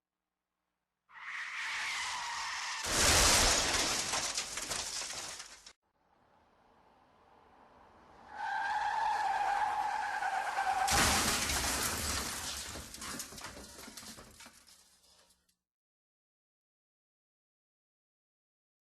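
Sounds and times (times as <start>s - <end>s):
loud car crash: 1.7s - 5.8s, 8.2s - 14.8s
shattering and clattering debris: 2.9s - 5.8s, 10.8s - 15.5s
tyre squeal: 8.3s - 11.0s.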